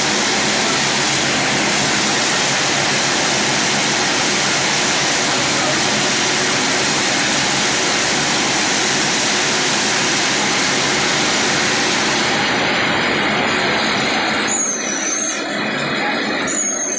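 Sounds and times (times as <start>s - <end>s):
brief high squeal: 14.5s - 15.7s, 16.4s - 16.9s.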